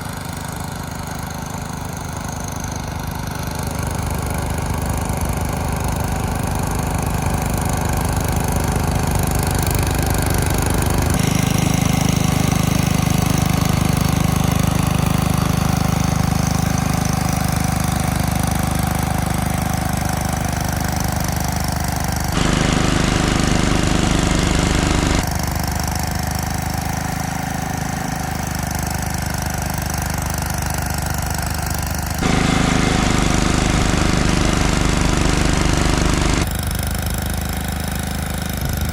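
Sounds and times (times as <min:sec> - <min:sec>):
snowblower engine running: 0:00.0 - 0:38.9.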